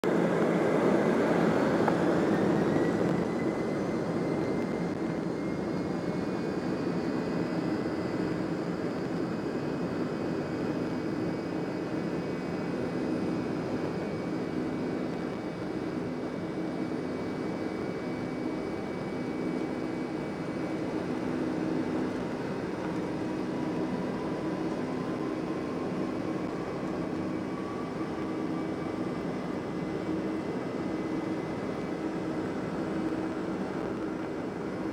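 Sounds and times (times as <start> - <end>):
jet engines heard from cabin: 0.0 - 34.9
whine rising in pitch: 1.4 - 11.4.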